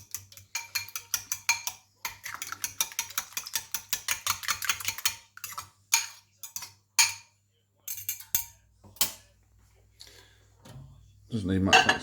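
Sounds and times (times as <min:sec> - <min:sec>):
fork beating eggs in a bowl: 0:00.0 - 0:09.3.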